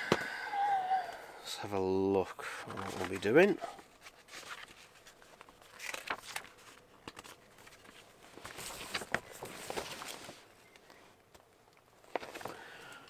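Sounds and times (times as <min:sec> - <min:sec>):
paper rustling: 0:02.7 - 0:10.4.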